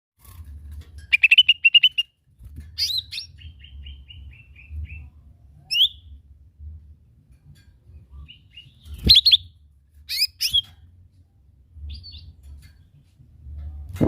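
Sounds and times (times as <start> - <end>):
bird singing bright chirps: 10.1 - 10.8.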